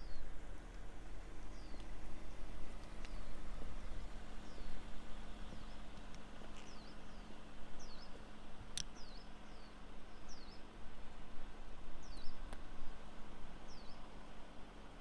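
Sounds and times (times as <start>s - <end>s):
small bird chirping: 0.0s - 0.3s, 1.5s - 1.9s, 2.9s - 3.4s, 4.0s - 8.2s, 8.8s - 10.7s, 12.0s - 12.5s, 13.6s - 14.1s
low steady rumble: 0.0s - 15.0s.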